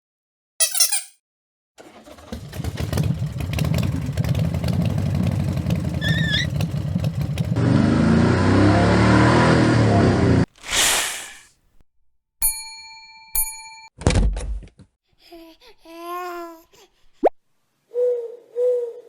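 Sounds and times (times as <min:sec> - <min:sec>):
motor engine revving: 0:01.8 - 0:10.5.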